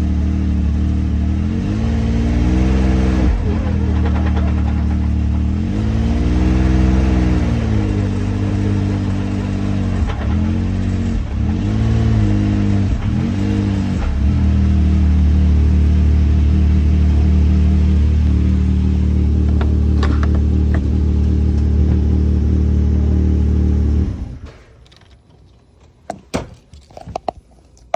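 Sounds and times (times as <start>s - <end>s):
turbocharged engine revving: 0.0s - 24.8s.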